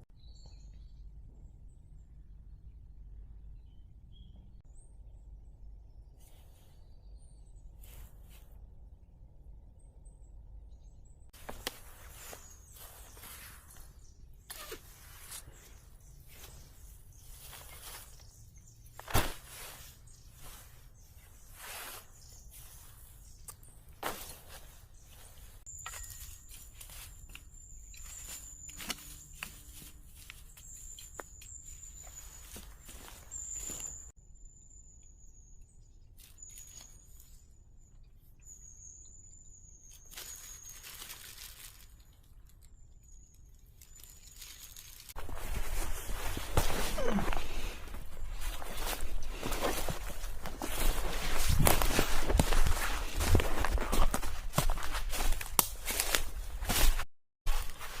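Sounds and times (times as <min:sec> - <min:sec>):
rustling and crunching: 0:11.4 - 0:34.1, 0:39.8 - 0:58.0.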